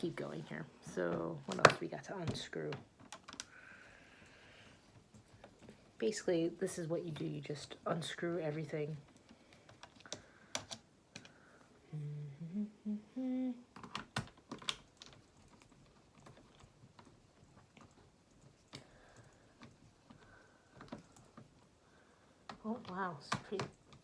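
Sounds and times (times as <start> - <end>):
person humming: 11.8 - 13.8.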